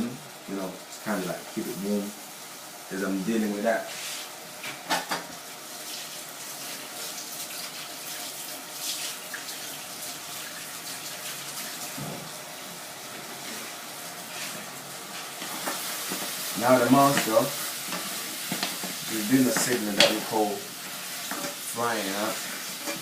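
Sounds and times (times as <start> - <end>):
meat sizzling in a pan: 0.0 - 23.0.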